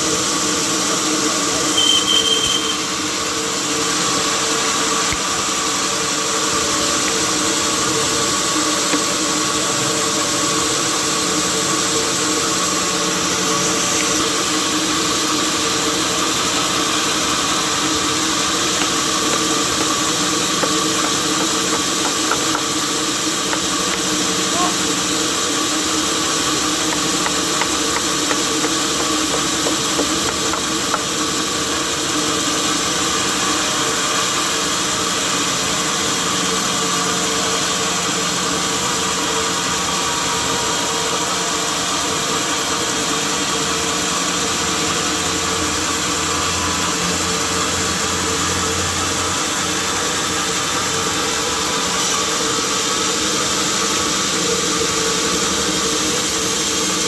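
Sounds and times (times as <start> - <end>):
steady hum: 0.0 - 36.2
sawmill machinery running: 0.0 - 57.0.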